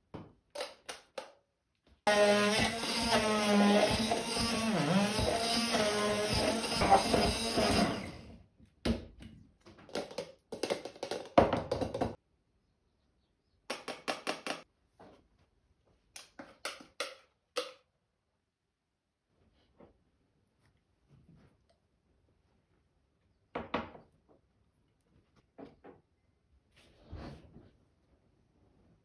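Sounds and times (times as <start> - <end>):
blender running: 2.1 - 8.4.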